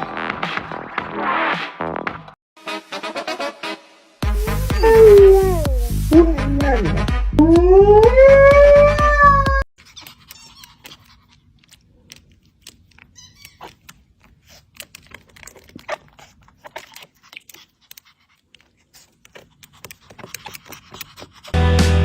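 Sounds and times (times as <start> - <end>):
pet chewing clicks and crunches: 9.8 - 21.6.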